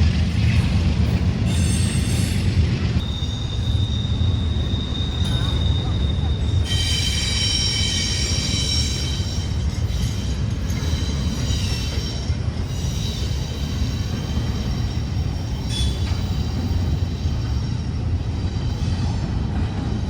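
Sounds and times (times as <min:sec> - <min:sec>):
train wheels rumbling on rail: 0:00.0 - 0:20.0
high-pitched wheel squeal: 0:03.0 - 0:17.7.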